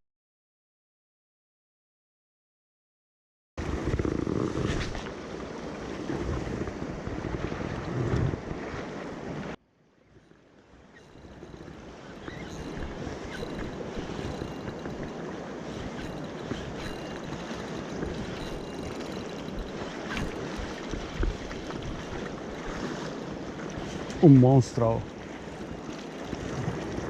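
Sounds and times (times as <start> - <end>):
wind buffeting microphone: 3.6 - 9.6, 10.8 - 27.0
surf washing against rocks: 11.4 - 27.0.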